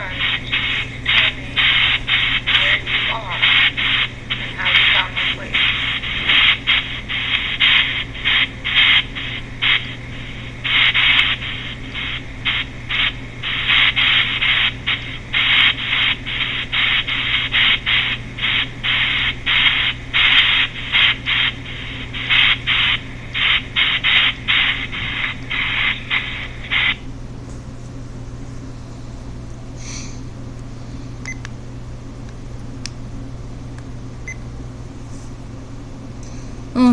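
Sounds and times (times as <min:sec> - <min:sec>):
chopped hiss bursts: 0:00.0 - 0:27.1
low steady hum: 0:00.0 - 0:36.9.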